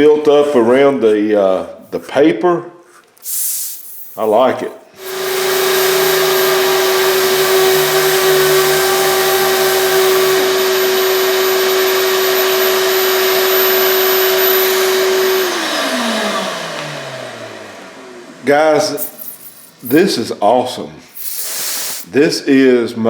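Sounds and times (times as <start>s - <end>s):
pneumatic sander whine: 4.9s - 19.9s
vacuum air rush: 4.9s - 19.9s.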